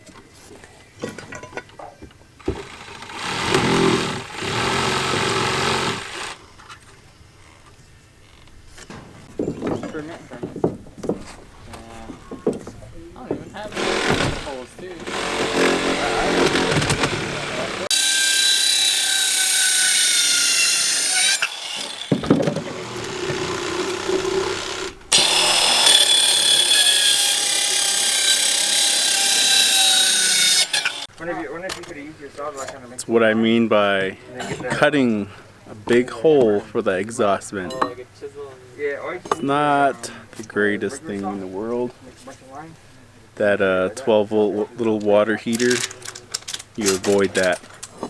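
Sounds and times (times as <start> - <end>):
power tool motor running: 2.4 - 6.4, 13.6 - 31.1
knocks and clatter: 8.8 - 17.8.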